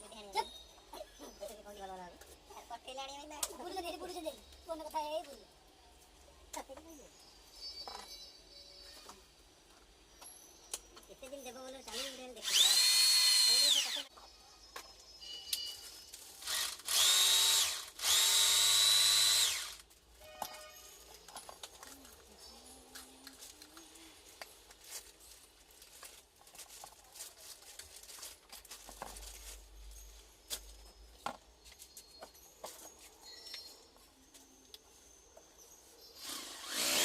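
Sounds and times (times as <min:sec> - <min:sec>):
electric power tool whining: 0:11.9 - 0:14.1, 0:16.4 - 0:19.8, 0:36.2 - 0:37.0.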